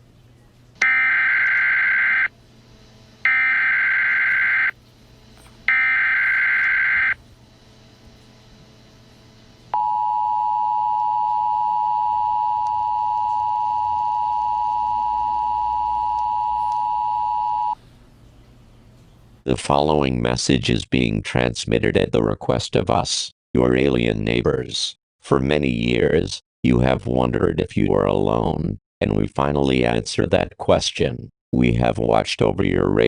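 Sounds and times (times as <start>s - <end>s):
two-tone attention signal: 0.8s - 2.3s, 3.3s - 4.7s, 5.7s - 7.2s
data burst tones: 3.3s - 4.8s, 5.7s - 7.2s.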